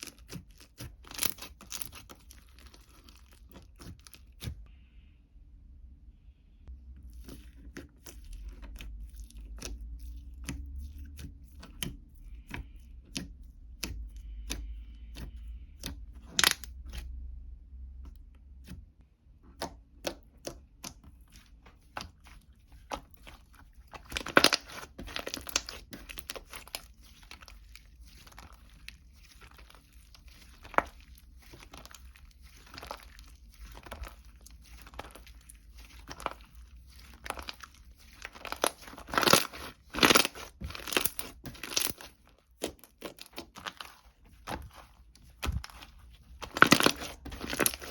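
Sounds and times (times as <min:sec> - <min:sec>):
crinkling and tearing: 0:00.0 - 0:04.6, 0:16.2 - 0:17.0, 0:21.0 - 0:47.9
soft rustles and scrapes: 0:06.6 - 0:17.1, 0:20.9 - 0:47.9.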